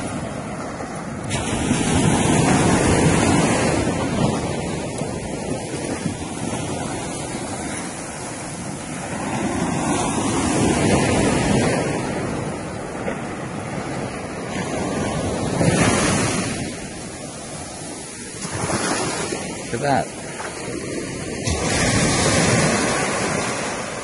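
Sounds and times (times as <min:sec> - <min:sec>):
ocean surf washing in: 0:00.0 - 0:24.0
wind buffeting microphone: 0:00.0 - 0:24.0.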